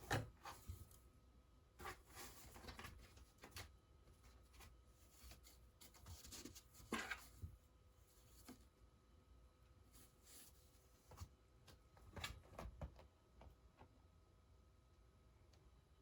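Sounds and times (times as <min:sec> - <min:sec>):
faint scratches and rustles: 0:01.8 - 0:08.9, 0:09.7 - 0:13.1.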